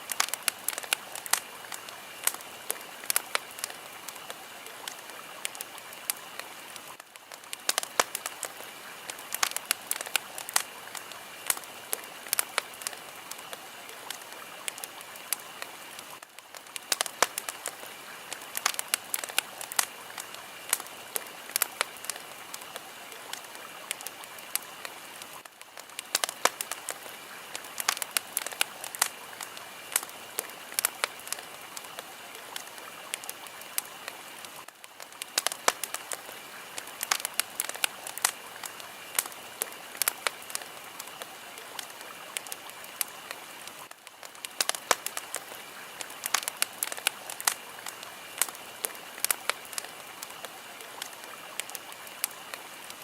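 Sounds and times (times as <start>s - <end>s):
fire crackling with pops: 0.0s - 53.0s.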